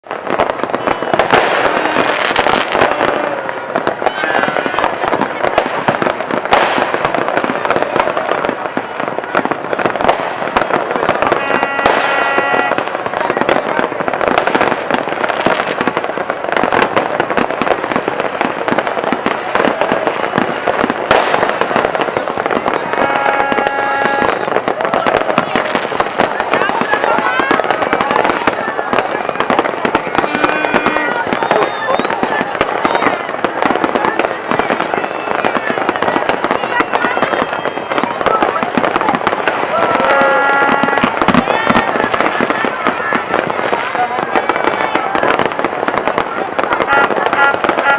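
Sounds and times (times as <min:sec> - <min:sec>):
fireworks and firecrackers crackling: 0:00.0 - 0:47.9
pitched horn-like tone: 0:01.0 - 0:03.6, 0:11.3 - 0:12.8, 0:22.9 - 0:24.5, 0:30.2 - 0:31.2, 0:39.9 - 0:41.0.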